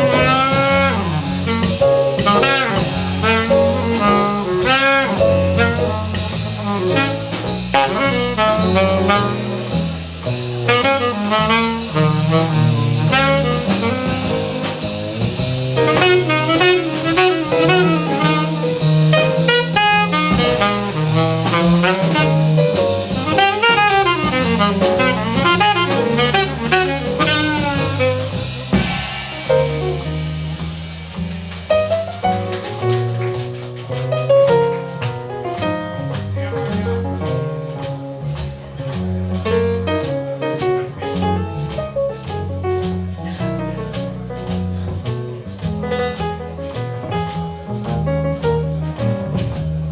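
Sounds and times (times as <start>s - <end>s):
saxophone melody: 0.0s - 31.0s
drum kit: 0.0s - 49.9s
walking bass line: 0.0s - 49.9s.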